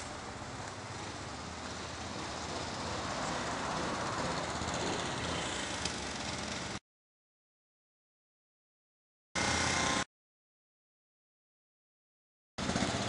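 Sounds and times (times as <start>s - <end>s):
lawn mower engine running: 0.0s - 6.8s, 9.4s - 10.0s, 12.6s - 13.0s.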